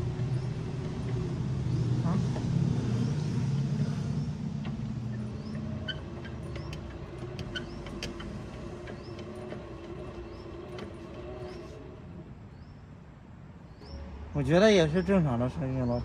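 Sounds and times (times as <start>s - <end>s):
drive motor hum: 0.0s - 12.4s.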